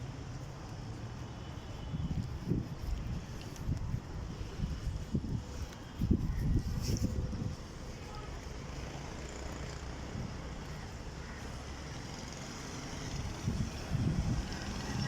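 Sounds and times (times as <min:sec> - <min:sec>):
wind buffeting microphone: 0:01.8 - 0:08.0, 0:13.0 - 0:15.0
motor vehicle rumbling: 0:02.0 - 0:15.0.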